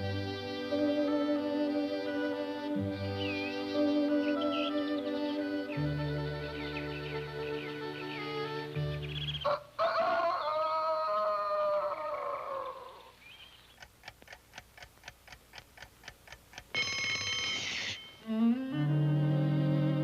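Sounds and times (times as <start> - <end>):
clock ticking: 13.6 - 18.3
alarm clock bell ringing: 16.7 - 18.2.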